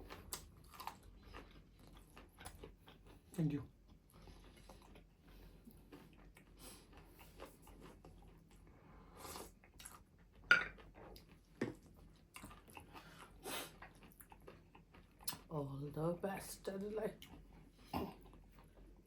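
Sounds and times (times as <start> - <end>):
person chewing and eating: 0.0 - 15.9, 17.1 - 19.0
dishes and cutlery clicking: 10.5 - 10.8.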